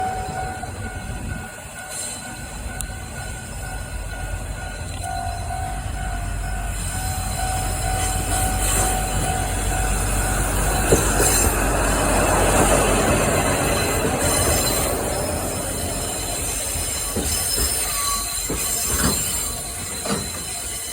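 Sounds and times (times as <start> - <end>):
freight train rumble and wheel noise: 0.0 - 20.9
level-crossing alarm bell ringing: 0.0 - 20.9.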